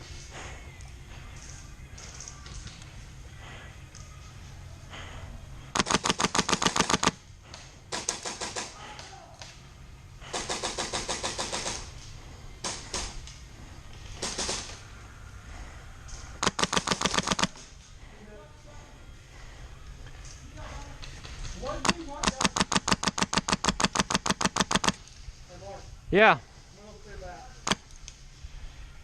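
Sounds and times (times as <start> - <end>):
airsoft guns firing bursts: 5.7 - 7.2, 7.9 - 8.9, 10.2 - 12.0, 12.6 - 13.2, 14.2 - 14.9, 16.4 - 17.6, 21.6 - 25.0.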